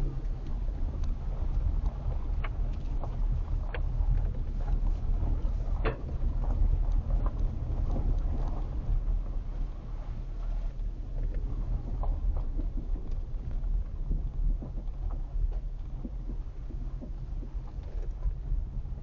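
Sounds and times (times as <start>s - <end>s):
vehicle driving on dirt road: 0.0s - 19.0s
clicks and light knocks: 0.1s - 8.7s.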